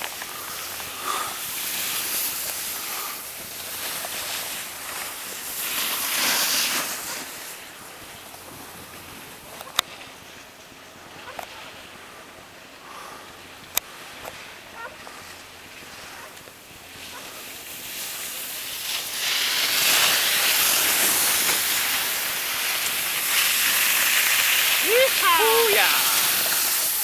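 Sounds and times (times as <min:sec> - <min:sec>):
skis scraping over snow: 0:00.0 - 0:12.4, 0:13.0 - 0:27.0.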